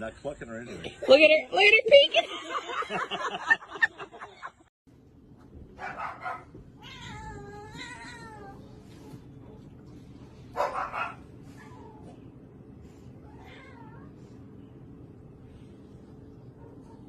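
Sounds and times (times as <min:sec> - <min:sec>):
cat meowing: 0:06.8 - 0:08.7, 0:13.2 - 0:14.1.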